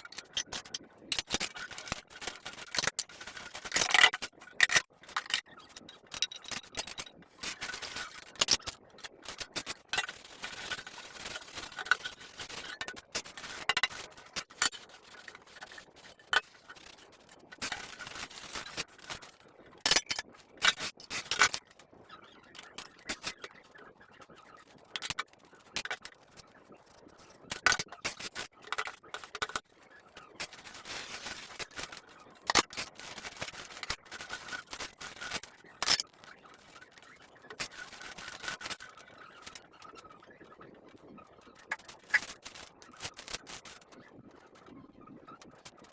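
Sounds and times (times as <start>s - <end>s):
utensils scraping: 32.5s - 36.0s.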